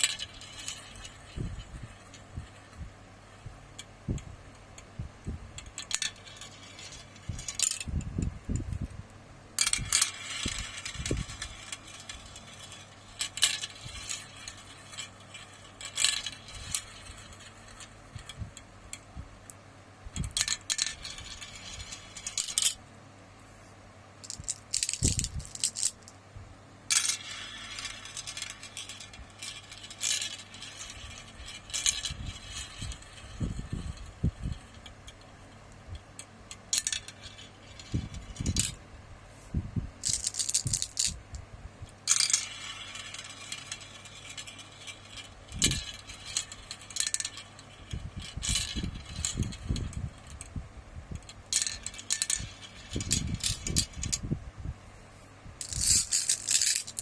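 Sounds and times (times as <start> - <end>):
marbles clattering down a track: 0.0 - 2.8, 5.6 - 7.9, 9.6 - 18.6, 20.2 - 22.8, 24.2 - 26.1, 26.9 - 35.2, 40.0 - 41.2, 42.0 - 50.5, 51.2 - 54.2, 55.6 - 57.0.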